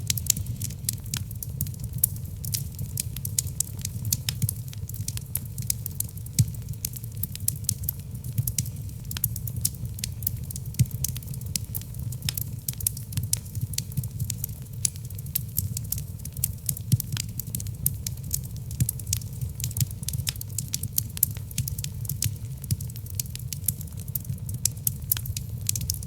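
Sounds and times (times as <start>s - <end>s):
logs crackling and popping: 0.0s - 26.0s
low rumble of flames: 0.0s - 26.0s.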